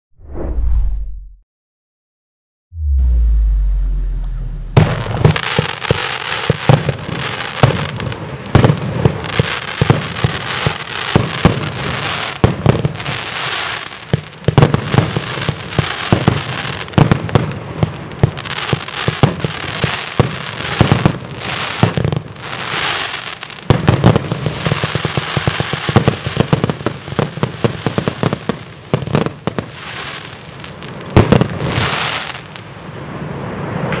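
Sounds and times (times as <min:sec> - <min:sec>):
firework launch thumps and bangs: 0:04.7 - 0:06.9
firework crackling and hiss: 0:04.8 - 0:33.8.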